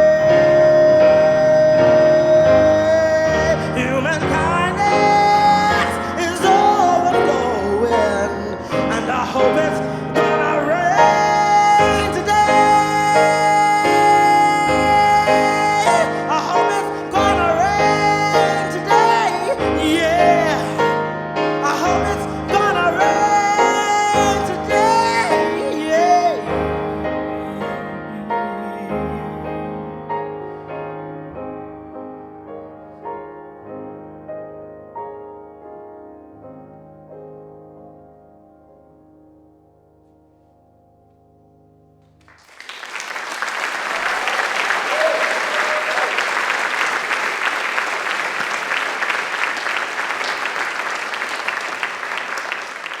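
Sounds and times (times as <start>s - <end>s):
slow soft piano chords: 0.0s - 42.4s
audience applauding: 14.7s - 20.8s, 42.2s - 53.0s.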